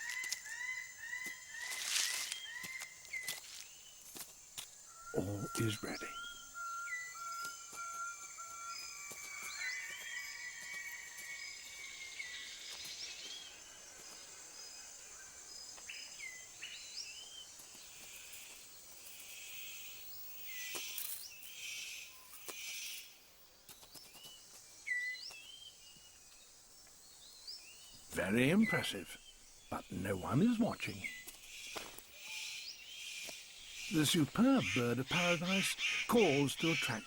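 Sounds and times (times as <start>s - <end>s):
bird chirps: 4.8s - 23.2s, 27.1s - 37.0s.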